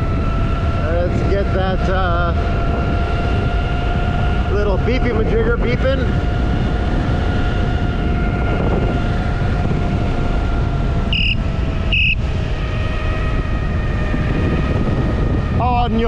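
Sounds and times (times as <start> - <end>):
electric unicycle motor whine: 0.0 - 16.0
wind rumbling on microphone: 0.0 - 16.0
short high electronic beeps: 11.1 - 12.2.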